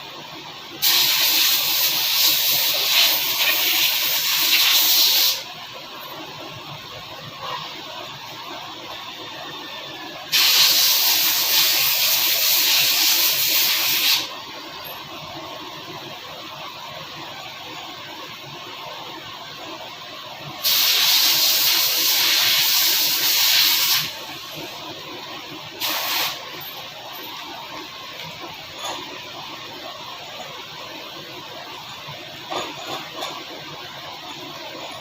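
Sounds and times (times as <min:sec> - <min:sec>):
pressurised air jet hissing: 0:00.8 - 0:05.4, 0:10.3 - 0:14.3, 0:20.6 - 0:24.2, 0:25.8 - 0:26.5.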